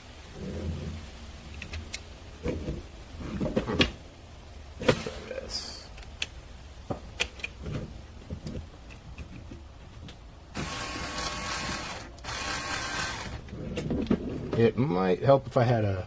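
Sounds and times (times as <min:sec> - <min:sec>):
small clicks and knocks: 0:05.9 - 0:10.3
electric screwdriver whirring: 0:10.6 - 0:13.5.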